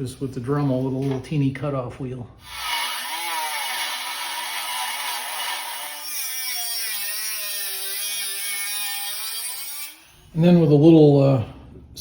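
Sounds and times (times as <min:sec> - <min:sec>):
rotary tool cutting sheet metal: 0:02.4 - 0:10.3.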